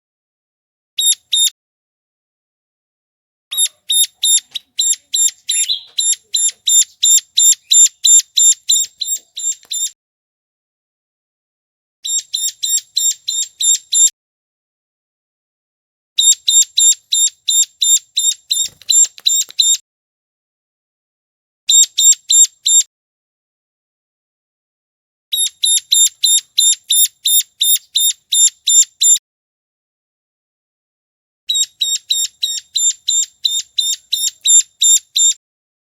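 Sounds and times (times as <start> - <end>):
bird calling rapid high notes: 3.5 - 10.0.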